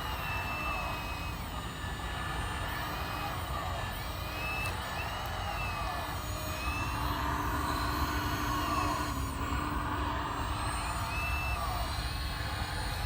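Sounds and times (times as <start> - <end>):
hydraulic pump whine: 0.0 - 13.0.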